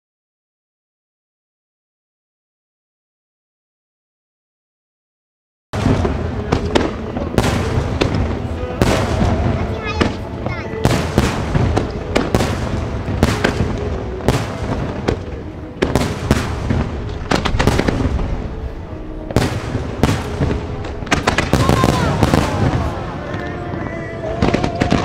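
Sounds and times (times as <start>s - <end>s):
fireworks bursting: 5.8s - 25.0s.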